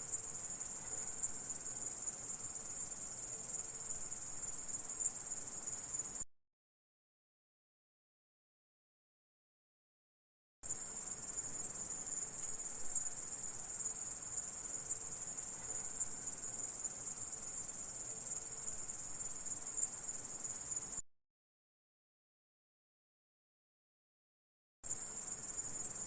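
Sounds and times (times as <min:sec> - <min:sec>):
grasshopper stridulating: 0:24.9 - 0:26.0.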